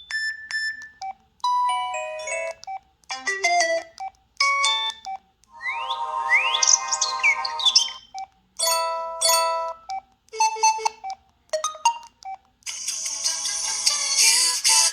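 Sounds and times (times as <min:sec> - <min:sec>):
ringtone music: 0:01.5 - 0:12.2
beeping electronic ringtone: 0:03.4 - 0:12.2.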